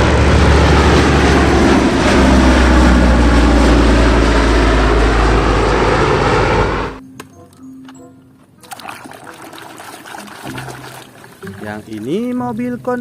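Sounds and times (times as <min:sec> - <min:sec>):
aircraft engine drone: 0:00.0 - 0:07.0.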